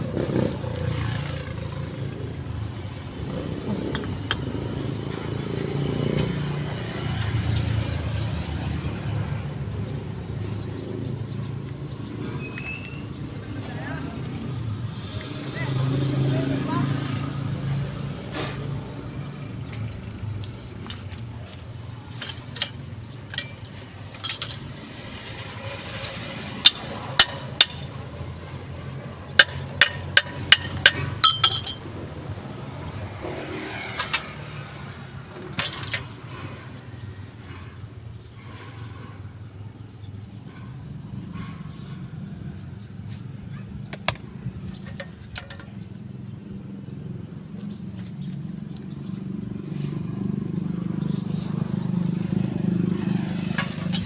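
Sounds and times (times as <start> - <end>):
metallic tool knocks and clanks: 22.0 - 24.8, 26.1 - 28.0, 29.4 - 32.0, 35.3 - 36.2, 43.9 - 45.9.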